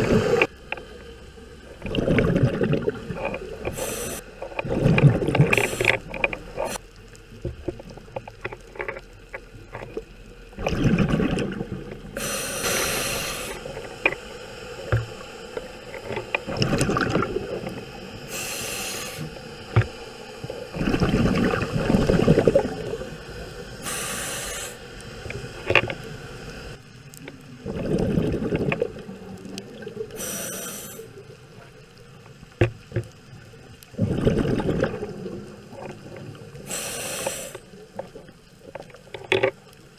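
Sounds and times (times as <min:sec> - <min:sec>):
bubbling rumble of exhaled bubbles: 0:01.4 - 0:03.8, 0:04.4 - 0:08.4, 0:09.5 - 0:12.2, 0:14.7 - 0:18.3, 0:19.3 - 0:23.8, 0:27.4 - 0:30.2, 0:33.2 - 0:36.7
high hiss of regulator air: 0:03.7 - 0:04.2, 0:05.5 - 0:06.0, 0:12.2 - 0:15.5, 0:18.2 - 0:19.6, 0:23.8 - 0:25.0, 0:30.2 - 0:31.1, 0:36.6 - 0:37.7.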